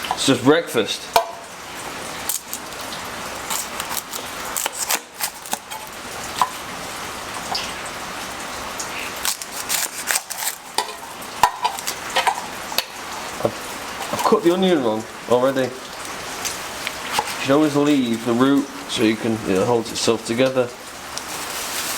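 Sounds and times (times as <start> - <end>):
knife cutting onion: 3.4 - 6.6, 9.1 - 12.5, 17.1 - 17.4.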